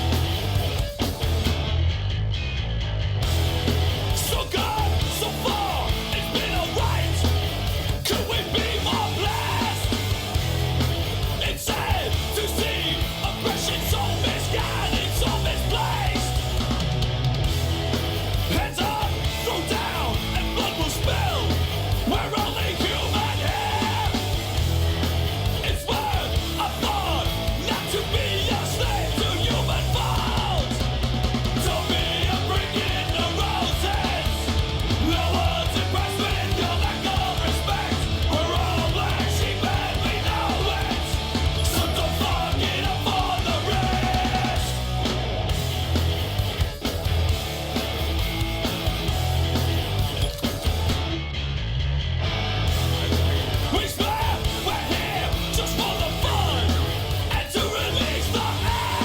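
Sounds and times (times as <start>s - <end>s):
loud rock music: 0.0s - 59.0s
shouted vocals: 4.1s - 10.4s, 11.4s - 16.8s, 18.4s - 24.7s, 25.4s - 45.0s, 53.0s - 59.0s.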